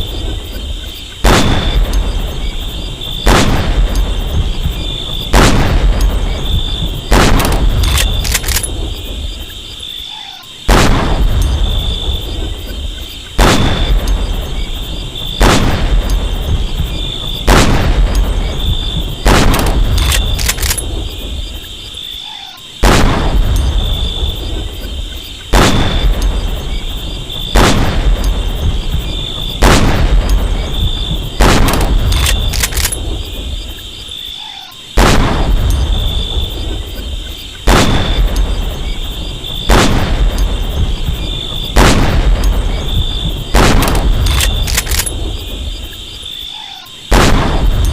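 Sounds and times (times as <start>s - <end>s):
rifle shots with echo: 1.2s - 9.3s, 10.7s - 12.5s, 13.4s - 21.4s, 22.8s - 24.0s, 25.5s - 26.4s, 27.4s - 28.7s, 29.3s - 33.5s, 35.0s - 36.8s, 37.6s - 38.6s, 39.6s - 42.9s, 43.5s - 45.6s, 47.1s - 47.9s
light clicks: 7.4s - 8.7s, 19.5s - 20.9s, 31.7s - 33.0s, 43.8s - 45.2s.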